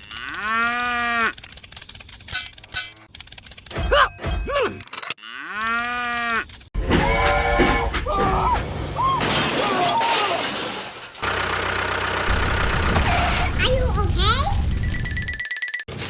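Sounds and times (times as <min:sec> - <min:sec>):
cow mooing: 0:00.0 - 0:01.4, 0:05.2 - 0:07.9
loud noisy clatter: 0:12.2 - 0:15.2.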